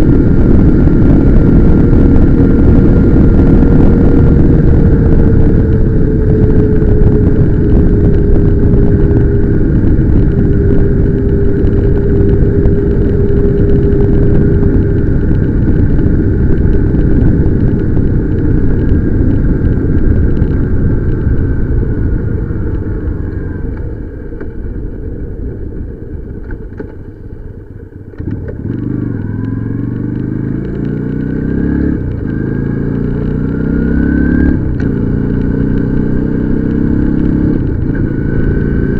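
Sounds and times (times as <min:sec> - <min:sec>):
motorcycle engine: 0:00.0 - 0:38.9
wind noise: 0:00.0 - 0:38.9.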